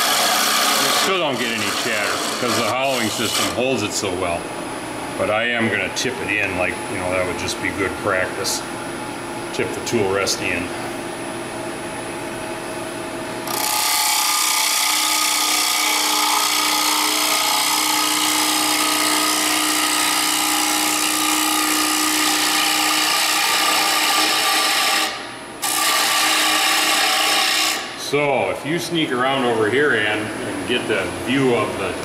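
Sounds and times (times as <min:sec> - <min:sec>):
tool cutting into wood: 0:00.0 - 0:03.6, 0:13.5 - 0:27.9
lathe hum: 0:00.0 - 0:09.5, 0:10.1 - 0:28.2.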